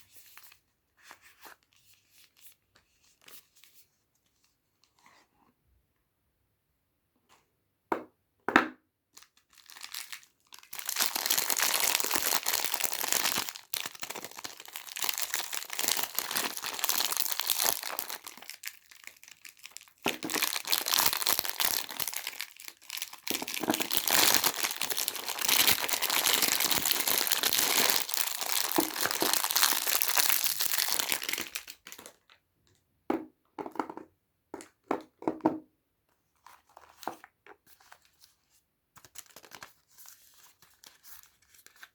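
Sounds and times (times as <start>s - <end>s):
wrapper crinkling and tearing: 9.2s - 32.4s, 39.0s - 41.9s.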